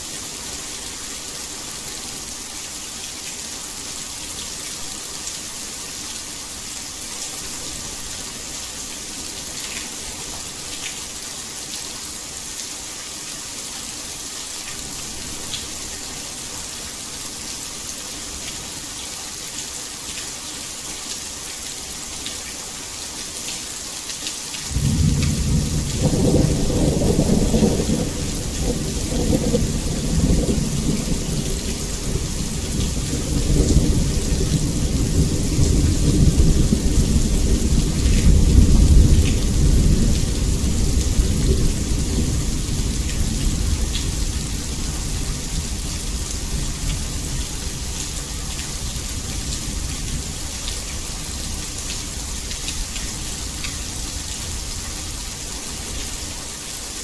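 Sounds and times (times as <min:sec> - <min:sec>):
heavy rain hissing: 0:24.4 - 0:57.0
thunder rumbling: 0:24.7 - 0:42.6.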